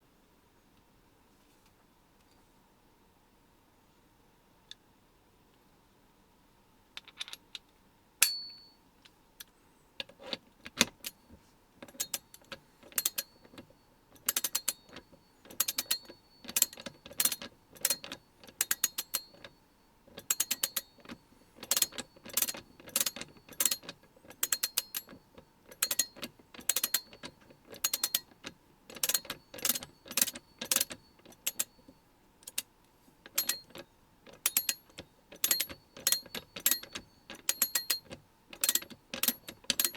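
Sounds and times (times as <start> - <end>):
ratchet handle clicking: 25.7 - 28.3, 33.3 - 39.9.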